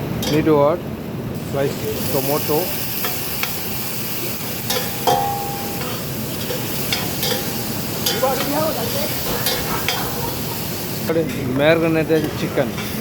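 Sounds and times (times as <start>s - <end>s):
vegetables sizzling in oil: 1.3s - 13.0s
spoon stirring and scraping pan: 4.4s - 13.0s.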